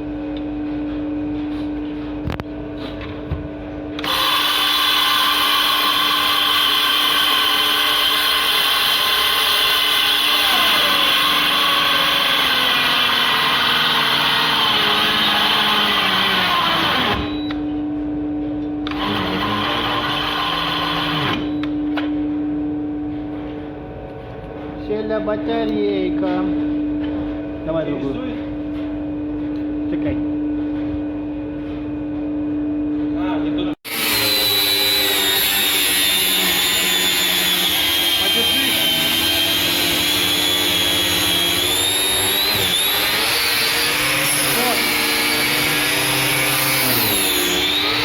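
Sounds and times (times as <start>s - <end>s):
cordless drill boring into concrete: 4.0s - 17.4s, 18.9s - 21.5s, 33.9s - 48.0s.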